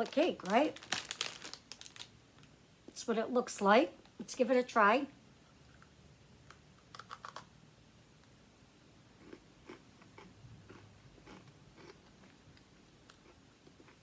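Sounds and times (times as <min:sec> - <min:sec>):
person crunching cookie: 0:09.2 - 0:12.4.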